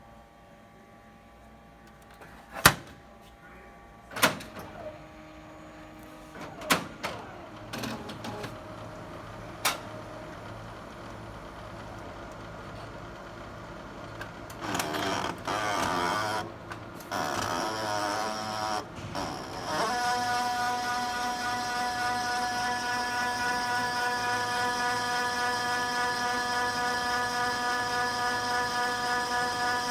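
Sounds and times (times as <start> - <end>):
printer humming: 1.4 - 29.9
printer grinding and whirring: 4.1 - 29.9
mechanical whine: 14.2 - 29.9.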